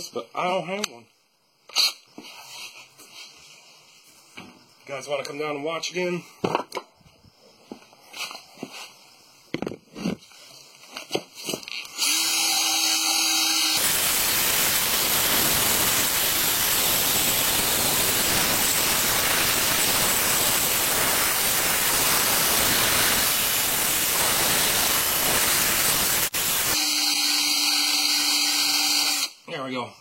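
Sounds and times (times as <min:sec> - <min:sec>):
power tool cleaning metal: 0:12.0 - 0:29.3.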